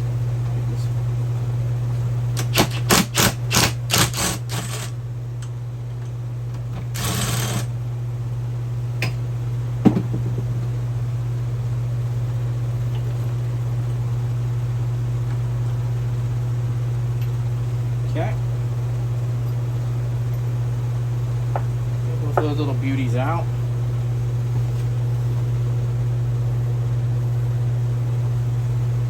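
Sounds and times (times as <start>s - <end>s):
steady low hum: 0.0s - 29.0s
short mechanical bursts: 2.4s - 5.0s, 6.9s - 7.7s.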